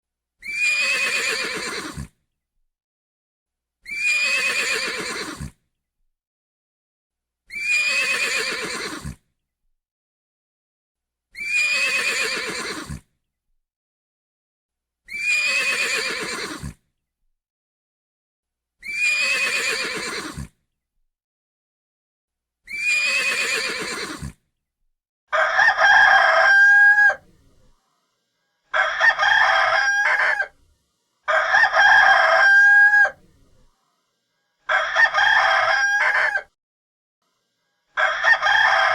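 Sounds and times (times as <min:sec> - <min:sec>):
horse whinnying: 0:00.4 - 0:02.2, 0:03.9 - 0:05.6, 0:07.5 - 0:09.2, 0:11.4 - 0:13.0, 0:15.1 - 0:16.8, 0:18.8 - 0:20.6, 0:22.7 - 0:24.4, 0:32.0 - 0:33.2
rooster crowing: 0:25.3 - 0:27.2, 0:28.7 - 0:30.6, 0:31.3 - 0:33.2, 0:34.7 - 0:36.6, 0:38.0 - 0:38.9.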